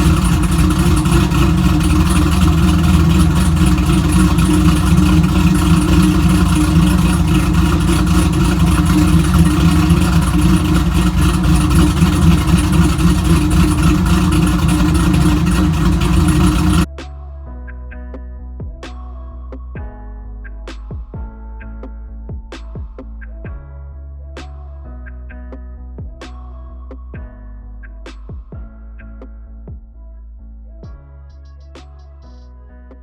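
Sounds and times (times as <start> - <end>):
loud car engine running: 0.0 - 16.9.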